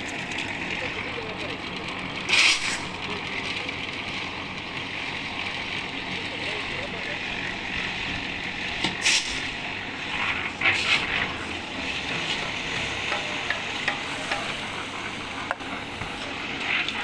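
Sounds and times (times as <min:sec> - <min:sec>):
hand tools scraping wet concrete: 0:02.3 - 0:02.8, 0:09.0 - 0:17.0.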